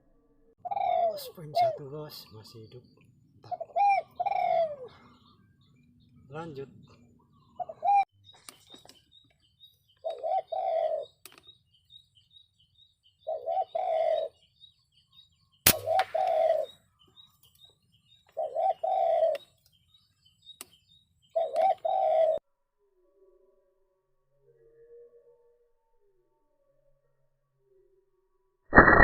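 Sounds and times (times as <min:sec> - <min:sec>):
dove cooing: 0:00.6 - 0:02.0, 0:03.4 - 0:05.2, 0:06.8 - 0:08.1, 0:10.0 - 0:11.2, 0:13.2 - 0:14.5, 0:15.8 - 0:16.8, 0:18.3 - 0:19.5, 0:21.3 - 0:22.4
sharp crack: 0:15.7 - 0:16.4.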